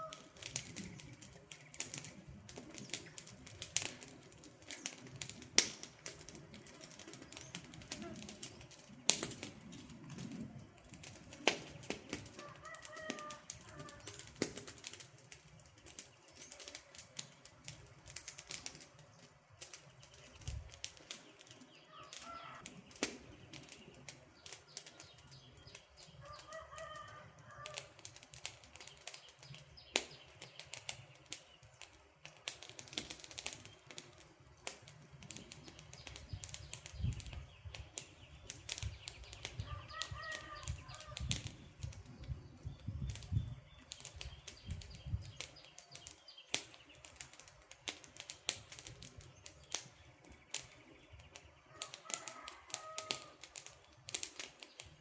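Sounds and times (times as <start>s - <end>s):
campfire crackling and popping: 0.0s - 55.0s
faint bird calls: 6.7s - 8.8s, 21.8s - 23.0s, 35.6s - 42.4s.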